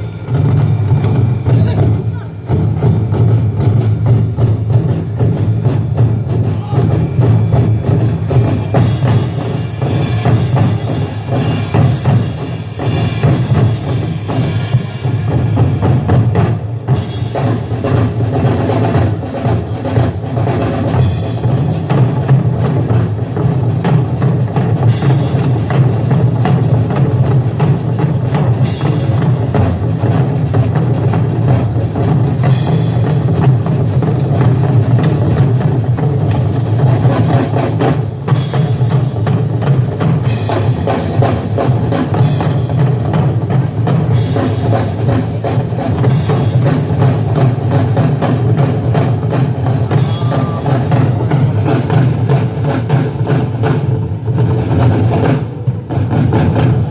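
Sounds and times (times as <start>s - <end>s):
music with drums and percussion: 0.0s - 56.9s.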